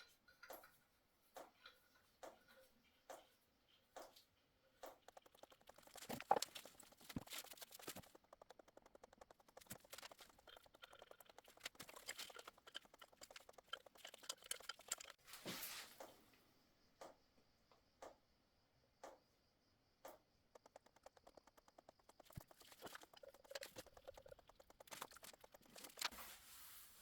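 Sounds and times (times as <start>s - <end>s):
rapid clicking of plumbing fittings: 0.0s - 15.3s, 15.9s - 19.4s, 20.0s - 26.2s.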